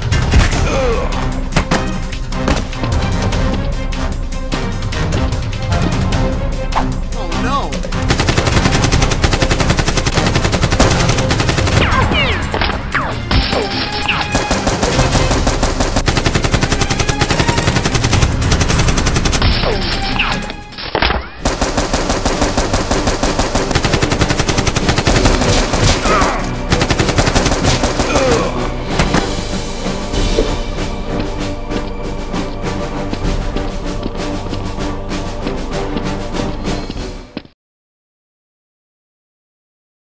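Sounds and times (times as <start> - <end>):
rapid automatic gunfire: 8.1 - 12.2, 14.2 - 19.5, 21.4 - 28.4.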